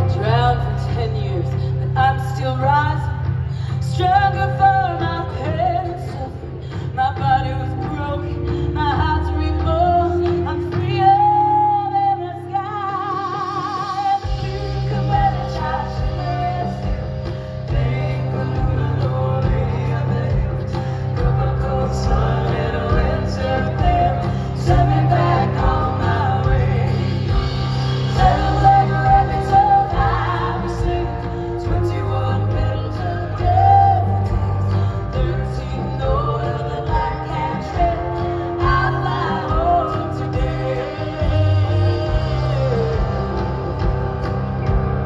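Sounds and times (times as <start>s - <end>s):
live band music: 0.0s - 45.0s
deep bass: 14.2s - 45.0s.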